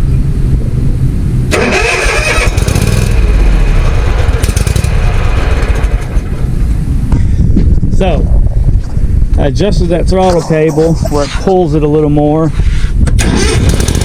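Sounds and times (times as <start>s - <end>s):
lawn mower engine running: 1.5s - 6.9s, 13.2s - 14.0s.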